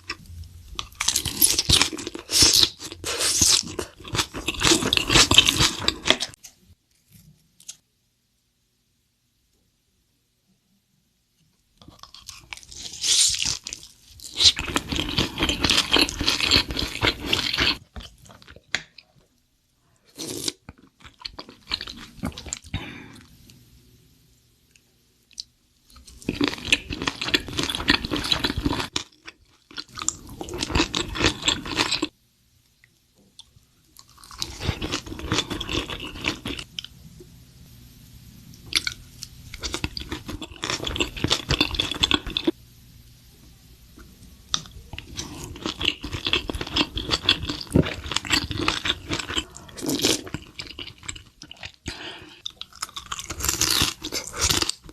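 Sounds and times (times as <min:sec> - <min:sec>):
crunchy chewing: 0:00.1 - 0:06.4, 0:11.8 - 0:19.0, 0:25.3 - 0:32.1, 0:34.0 - 0:36.9, 0:38.7 - 0:42.6, 0:44.5 - 0:54.9.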